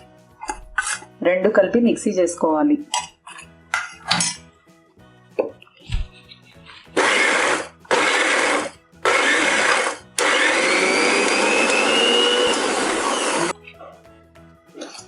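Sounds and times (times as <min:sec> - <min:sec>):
mixer grinder motor grinding: 0:07.0 - 0:13.6.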